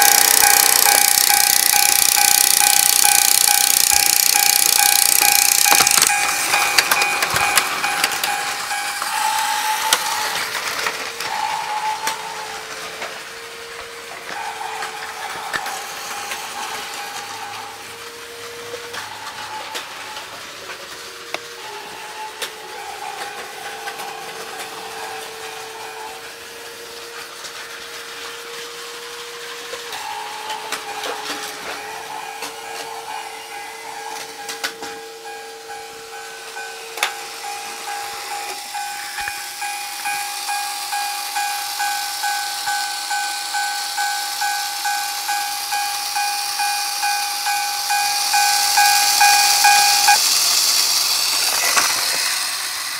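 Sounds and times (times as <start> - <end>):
toy crossing alarm dinging: 0.0 - 10.4, 29.9 - 50.3
clicks and clacks on track: 0.0 - 12.2
steady whine: 0.0 - 20.6, 29.8 - 50.2
plastic toy trains clattering: 0.0 - 28.9, 29.6 - 33.4, 34.0 - 35.6, 47.4 - 52.9.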